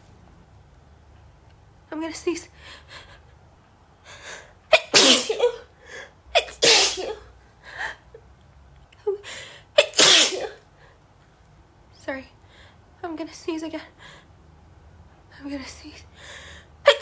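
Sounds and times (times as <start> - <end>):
woman sneezing: 4.7 - 5.6, 6.4 - 7.2, 9.8 - 10.6.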